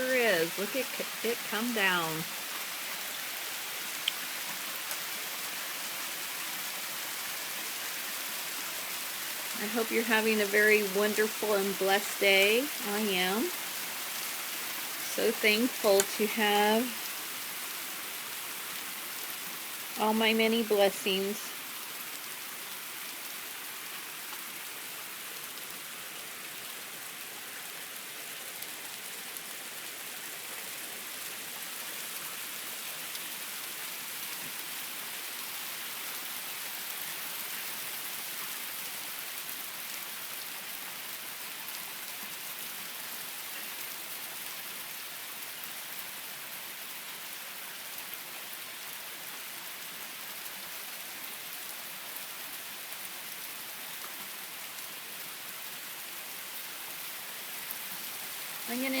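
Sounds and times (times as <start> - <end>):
hail falling: 0.0 - 36.0.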